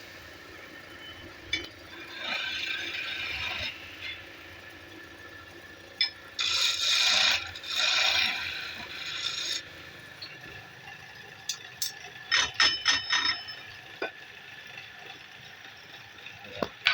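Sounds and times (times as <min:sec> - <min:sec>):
lathe tool scraping wood: 0:06.4 - 0:09.9.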